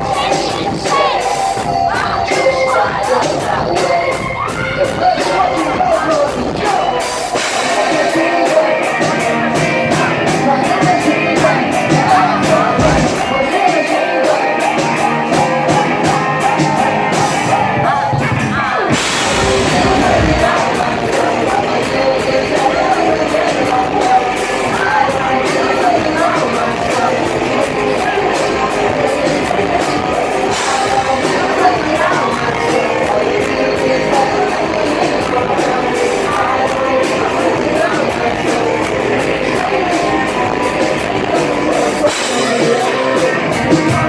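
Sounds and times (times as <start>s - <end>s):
live rock band playing: 0.0s - 44.0s
male lead vocal: 0.0s - 44.0s
drum beat: 4.6s - 13.9s, 18.9s - 32.4s
falling pitch slide: 18.9s - 21.2s.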